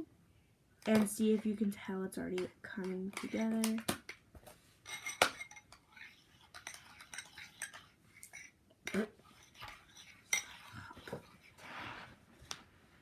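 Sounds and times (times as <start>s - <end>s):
spoon stirring slime in bowl: 0.9s - 4.2s, 4.9s - 11.7s.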